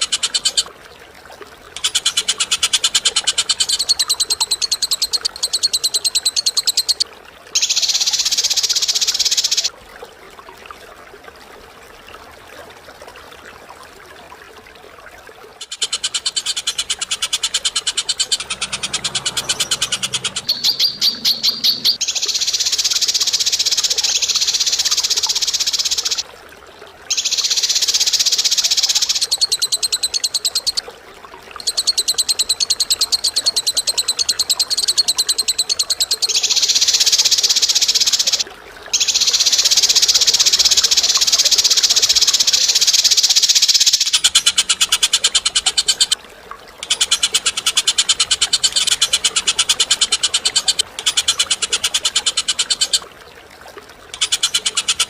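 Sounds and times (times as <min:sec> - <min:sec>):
harsh bird calls: 0:15.7 - 0:22.7.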